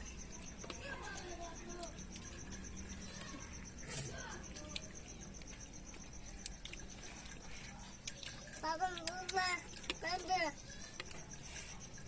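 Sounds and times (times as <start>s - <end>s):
cricket chirping: 0.0s - 12.0s
faint voices: 0.0s - 12.0s.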